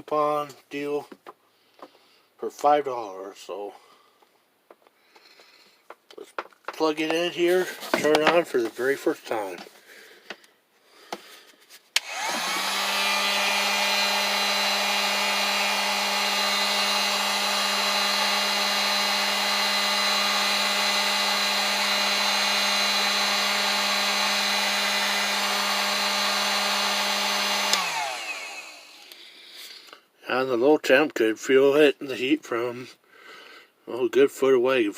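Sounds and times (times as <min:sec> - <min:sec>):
heat gun fan humming: 0:12.0 - 0:29.3
heat gun switch click: 0:27.6 - 0:28.0.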